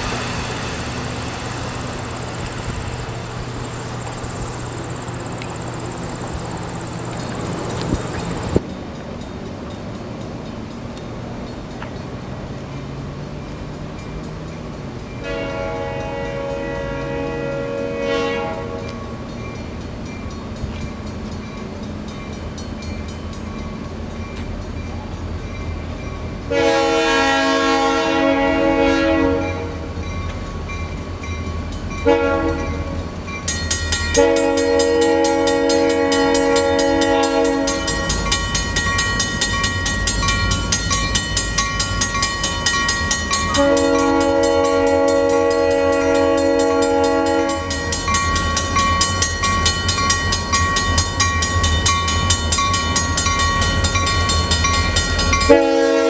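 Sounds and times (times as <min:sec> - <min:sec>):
steady high ring: 0:00.0 - 0:10.9, 0:29.4 - 0:56.0
train rumble: 0:00.0 - 0:56.0
locomotive air horn: 0:15.2 - 0:18.8, 0:26.5 - 0:29.9, 0:32.0 - 0:33.0, 0:34.2 - 0:37.9, 0:43.5 - 0:47.9, 0:55.4 - 0:56.0.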